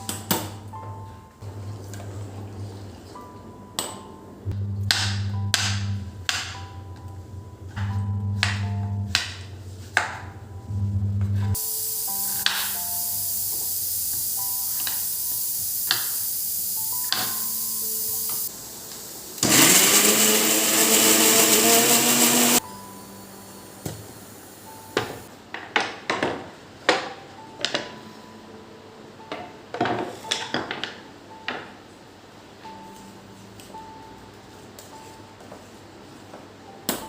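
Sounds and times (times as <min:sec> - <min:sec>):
steady hiss: 0:11.6 - 0:19.4
small electric motor whirring: 0:19.4 - 0:22.6.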